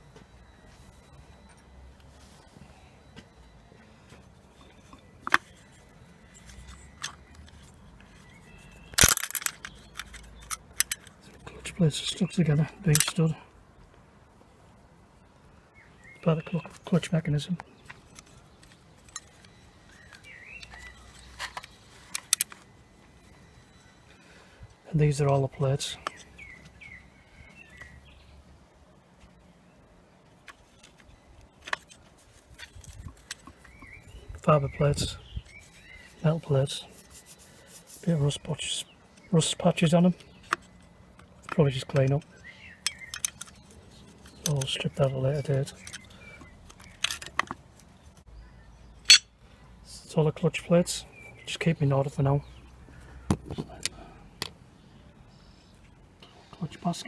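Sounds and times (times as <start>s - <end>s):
bird chirping: 0.0s - 13.4s, 15.2s - 57.0s
metal clutch clicks and knocks: 8.9s - 11.4s.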